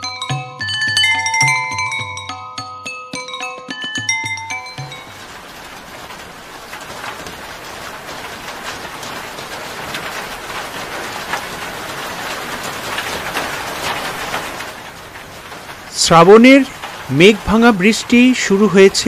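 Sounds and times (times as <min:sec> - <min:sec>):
heavy rain falling: 0:04.3 - 0:19.0
raindrops splashing close by: 0:04.7 - 0:19.0.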